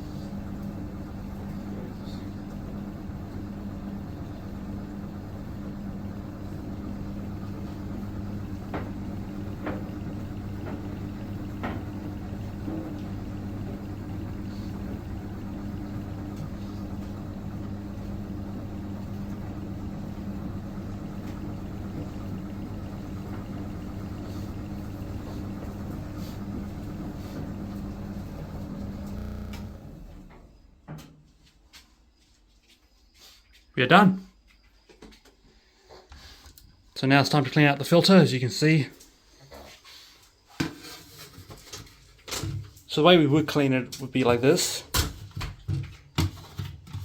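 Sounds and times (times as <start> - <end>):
tumble dryer motor hum: 0.0 - 30.7
faint clicks from tumbling drum: 7.5 - 14.2.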